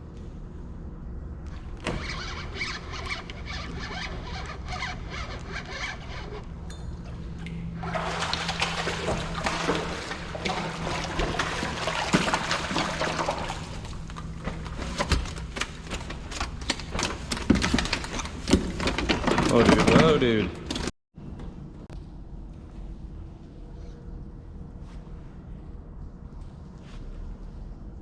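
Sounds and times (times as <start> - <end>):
water splashing and trickling: 7.4 - 15.0.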